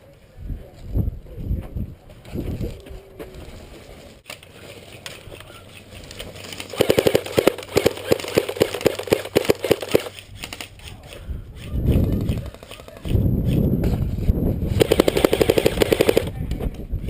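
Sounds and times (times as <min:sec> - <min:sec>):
airsoft gun rapid firing: 0:06.7 - 0:10.7, 0:11.9 - 0:13.2, 0:14.8 - 0:16.4.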